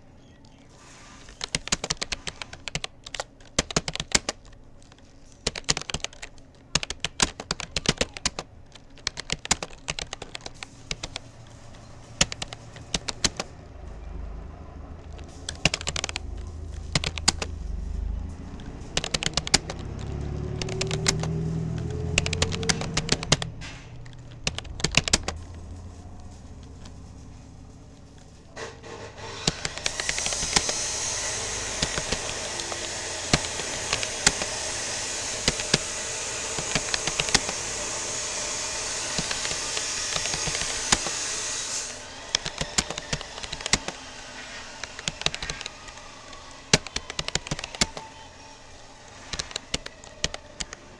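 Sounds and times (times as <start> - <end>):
keyboard typing: 0.0 - 50.9
low rumble with hum: 9.8 - 41.3.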